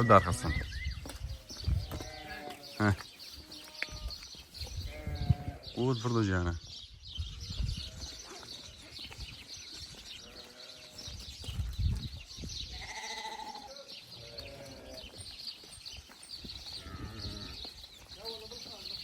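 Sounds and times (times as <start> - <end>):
livestock bleating: 1.7 - 4.2, 4.8 - 5.8, 10.2 - 11.1, 12.7 - 15.2, 16.8 - 17.7.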